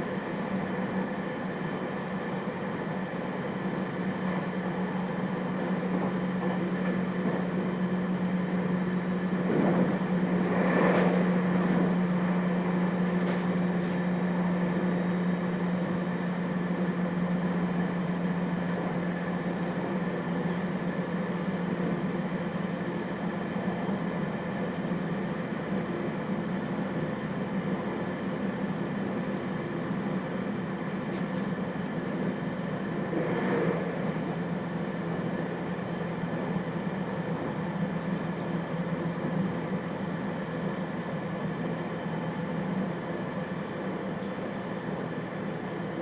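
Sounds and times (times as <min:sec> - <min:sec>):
train wheels on rail: 0:08.8 - 0:14.2.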